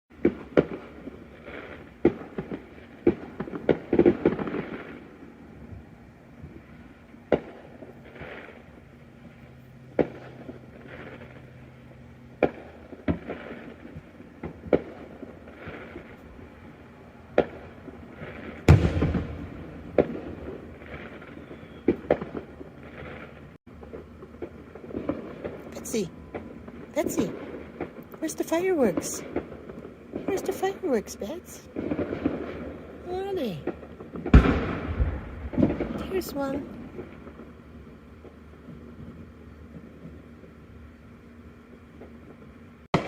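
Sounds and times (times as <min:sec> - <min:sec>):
fireworks bangs and pops: 0:00.1 - 0:11.6, 0:12.3 - 0:16.6, 0:17.3 - 0:40.6, 0:41.9 - 0:43.0
deep firework boom: 0:17.4 - 0:28.0, 0:33.6 - 0:37.6.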